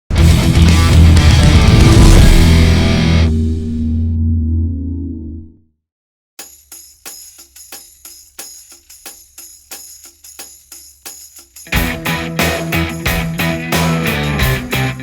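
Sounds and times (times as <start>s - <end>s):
rock band playing: 0.1s - 3.5s, 11.7s - 15.0s
low hum: 0.5s - 5.8s
tambourine percussion beat: 6.4s - 15.0s.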